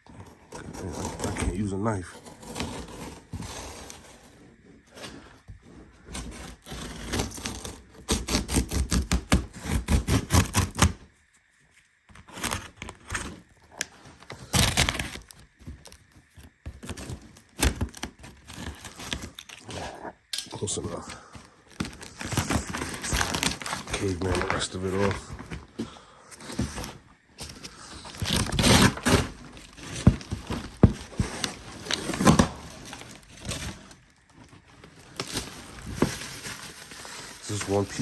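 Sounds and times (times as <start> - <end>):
cardboard box being torn open: 6.1 - 11.0, 12.2 - 16.0, 16.7 - 19.9, 21.7 - 25.6, 26.4 - 38.0.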